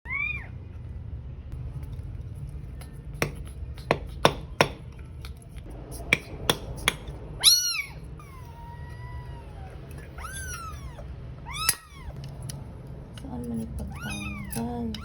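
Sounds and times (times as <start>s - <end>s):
cat meowing: 0.0s - 0.6s, 7.4s - 12.2s, 13.8s - 15.0s
steady low hum: 0.1s - 15.0s.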